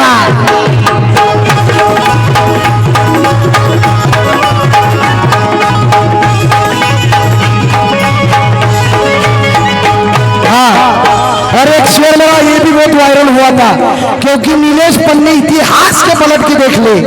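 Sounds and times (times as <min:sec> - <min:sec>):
hand drumming: 0:00.1 - 0:11.7.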